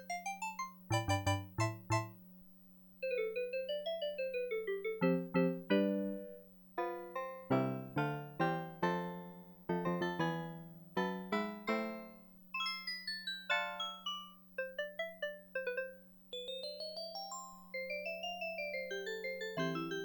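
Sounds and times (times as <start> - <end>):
bright keyboard single notes: 0.1 - 2.2
electric piano chords: 0.2 - 2.2, 3.1 - 12.8.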